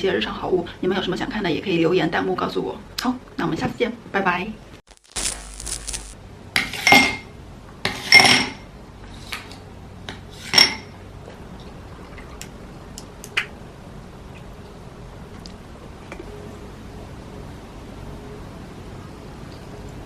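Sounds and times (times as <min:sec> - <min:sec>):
dishes and cutlery clinking: 0:06.6 - 0:07.3, 0:07.9 - 0:08.6, 0:10.4 - 0:10.9.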